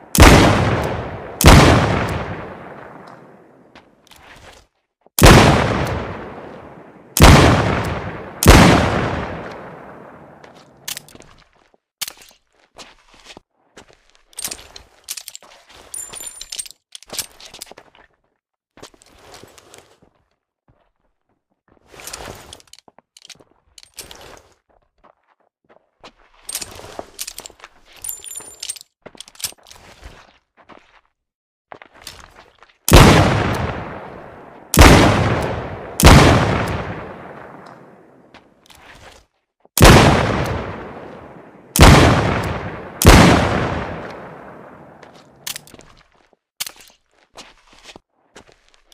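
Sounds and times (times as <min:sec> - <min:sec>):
metallic clicks and scrapes: 0:14.2 - 0:17.8, 0:26.4 - 0:29.9, 0:45.4 - 0:45.9, 0:46.6 - 0:47.1.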